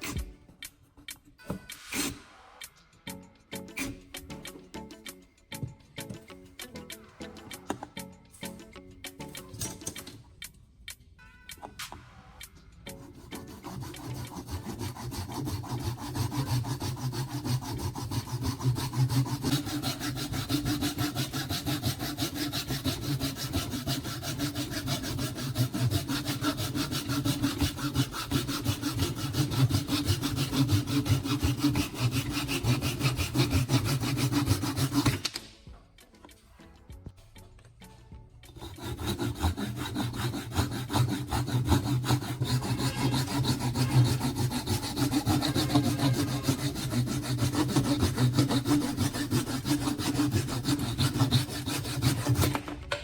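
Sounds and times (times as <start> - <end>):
tool rasping against material: 0.0 - 0.6, 12.8 - 35.4, 38.4 - 53.0.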